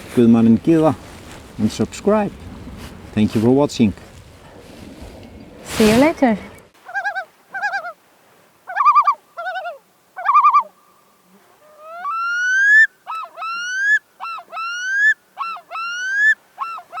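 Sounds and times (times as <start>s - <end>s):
bird calling: 0.0s - 8.0s, 8.7s - 10.8s.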